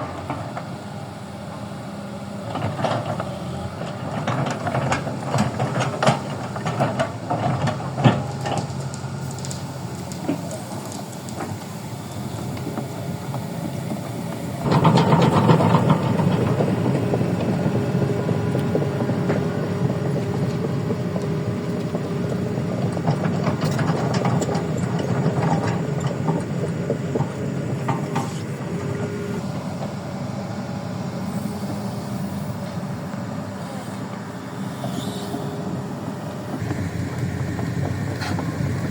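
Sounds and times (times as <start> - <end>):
engine running: 0.0 - 38.9
sharp clanks and knocks: 14.6 - 17.1.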